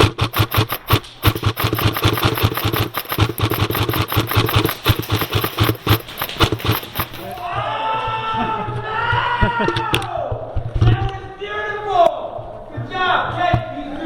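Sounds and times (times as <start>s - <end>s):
airsoft guns firing rapidly: 0.0s - 7.5s.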